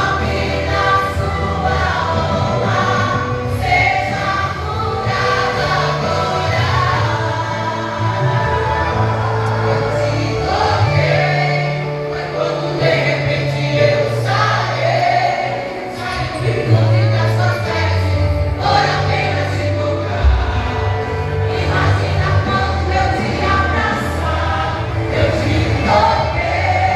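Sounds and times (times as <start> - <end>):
choir singing: 0.0 - 26.9
sustained bass line: 16.4 - 26.9.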